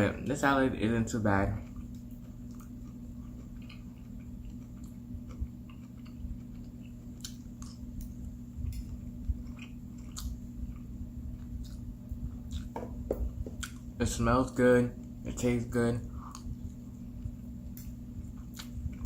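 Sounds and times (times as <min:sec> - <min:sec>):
chewing food: 0:01.5 - 0:12.7, 0:13.4 - 0:13.9, 0:16.2 - 0:19.0.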